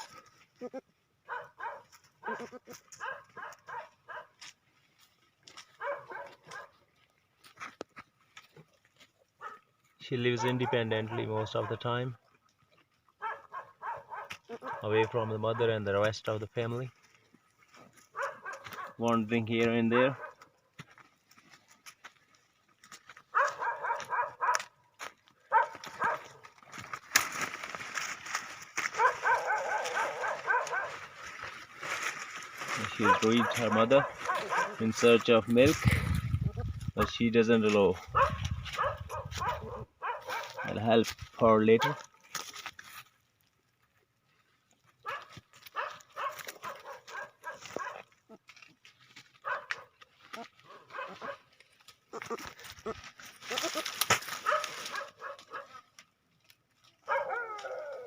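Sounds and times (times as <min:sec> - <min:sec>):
goat kid bleating: 0:00.0 - 0:01.1, 0:02.2 - 0:03.0, 0:14.3 - 0:14.8, 0:52.0 - 0:54.2.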